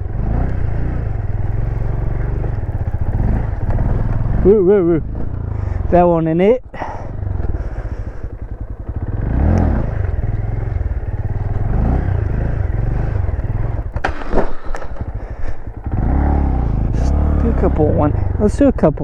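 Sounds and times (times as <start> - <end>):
motorcycle engine revving: 0.0 - 19.0
bike knocks and clatters: 13.8 - 15.2.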